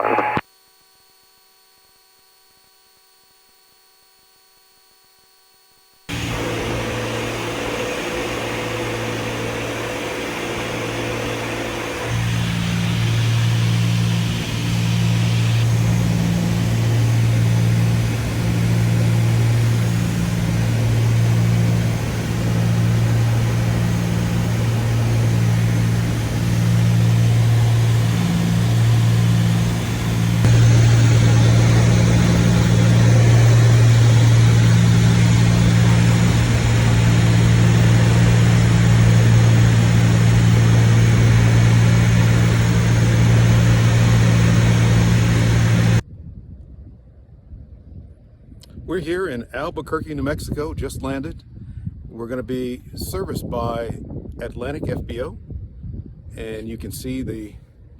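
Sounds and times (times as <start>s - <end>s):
propeller plane cabin drone: 6.1s - 46.0s.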